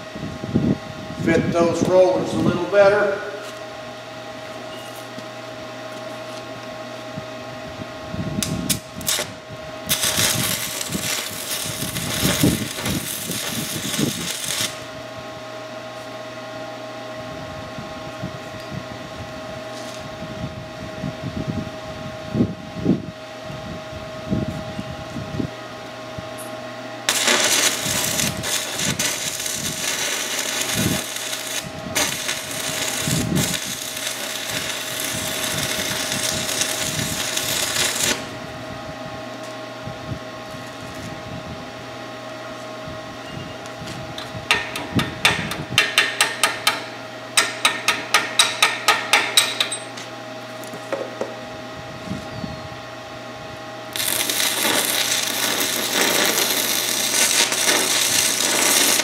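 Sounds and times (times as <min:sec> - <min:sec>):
steady hum: 0:00.0 - 0:59.0
welding arc crackling and hissing: 0:08.4 - 0:14.9, 0:27.1 - 0:38.4, 0:53.9 - 0:59.0
sharp metal taps: 0:44.5 - 0:46.8, 0:47.4 - 0:49.9.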